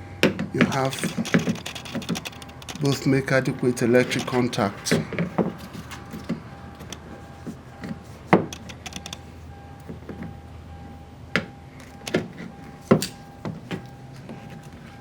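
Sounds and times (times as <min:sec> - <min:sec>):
plastic and metal parts clicking: 0:00.2 - 0:03.1, 0:04.0 - 0:07.1, 0:07.8 - 0:09.2.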